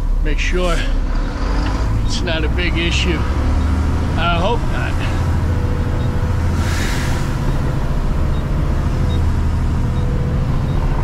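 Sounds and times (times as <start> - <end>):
garbage truck engine rumbling: 0.0 - 11.0
air hiss: 6.6 - 7.5.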